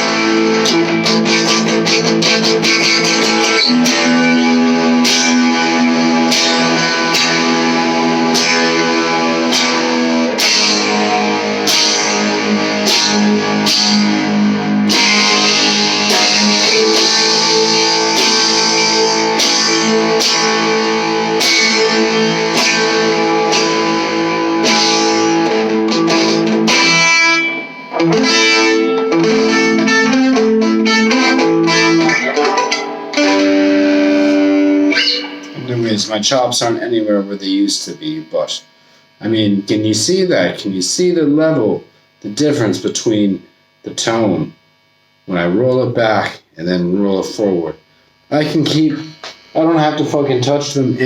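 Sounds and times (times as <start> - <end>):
overdriven electric guitar chords: 0.0 - 51.0.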